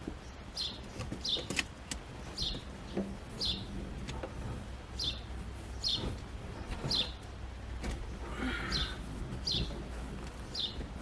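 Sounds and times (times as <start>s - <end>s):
bird chirping: 0.2s - 1.6s, 2.2s - 3.8s, 4.9s - 7.3s, 8.0s - 9.8s, 10.4s - 10.9s.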